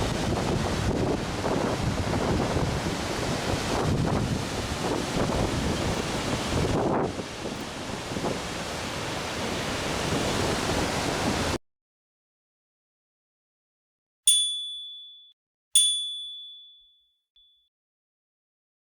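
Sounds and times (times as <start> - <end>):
rushing waterfall: 0.0 - 11.6
bright ding chimes: 14.3 - 17.6.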